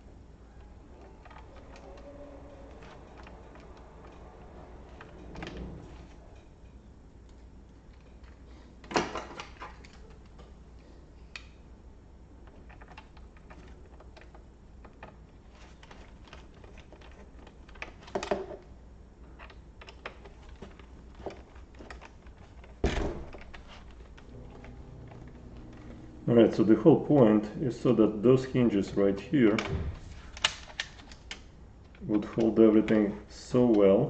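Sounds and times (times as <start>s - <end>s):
plastic parts and tools clicking: 0.6s - 6.5s, 12.4s - 26.1s, 29.5s - 33.0s.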